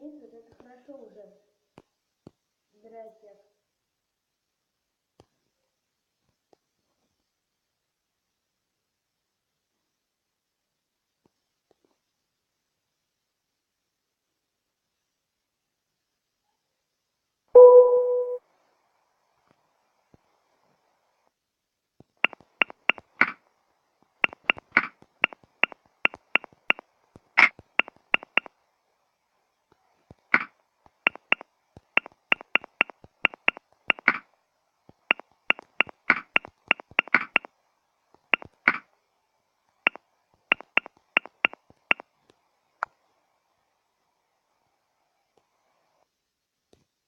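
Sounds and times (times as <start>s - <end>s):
phone keyboard clicks: 22.2s - 23.4s, 24.2s - 26.8s, 27.4s - 28.5s, 31.1s - 34.2s, 35.1s - 37.5s, 38.4s - 38.8s, 39.9s - 42.0s.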